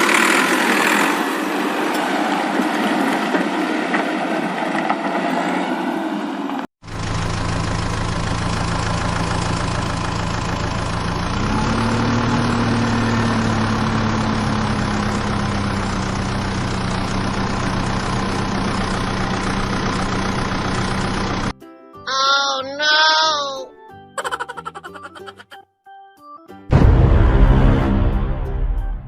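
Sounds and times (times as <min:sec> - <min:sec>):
engine running: 0:00.0 - 0:21.5.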